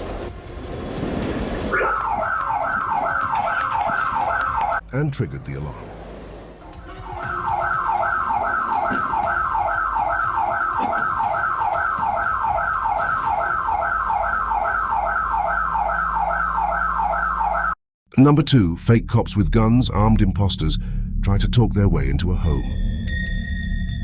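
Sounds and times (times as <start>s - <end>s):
alarm siren yelping: 1.7s - 4.8s, 6.7s - 17.8s.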